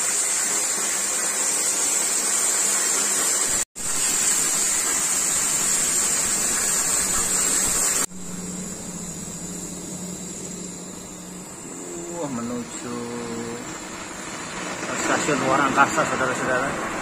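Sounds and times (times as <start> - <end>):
cutting torch hissing: 0.0 - 17.0
low hum: 5.4 - 17.0.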